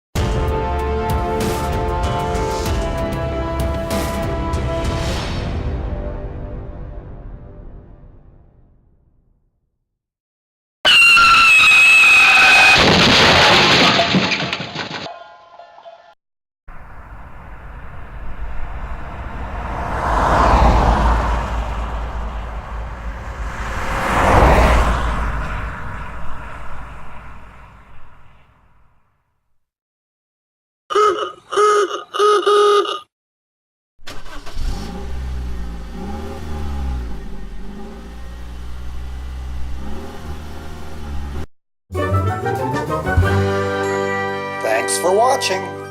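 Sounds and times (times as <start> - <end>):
cars driving past: 16.8 - 28.9, 34.2 - 43.7.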